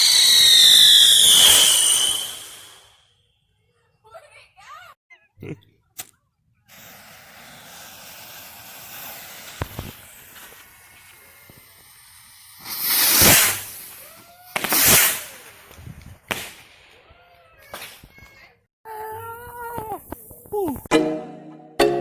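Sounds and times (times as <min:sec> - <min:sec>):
firework crack: 0:00.0 - 0:03.0, 0:06.0 - 0:18.5
firework hissing: 0:00.0 - 0:03.0, 0:06.7 - 0:16.6
firework rushing bursts: 0:00.0 - 0:03.0, 0:06.7 - 0:16.8.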